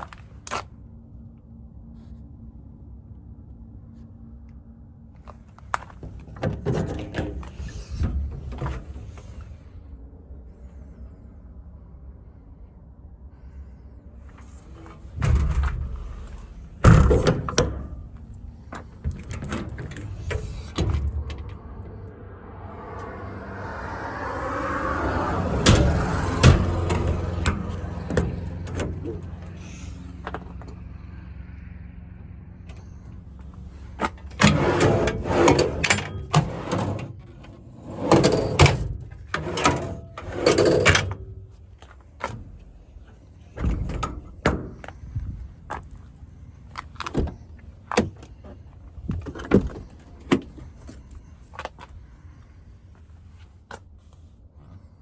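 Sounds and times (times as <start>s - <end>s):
metal compartment doors clanking: 5.3s - 9.6s, 14.3s - 22.2s, 24.8s - 30.8s, 32.6s - 46.0s, 46.8s - 51.2s.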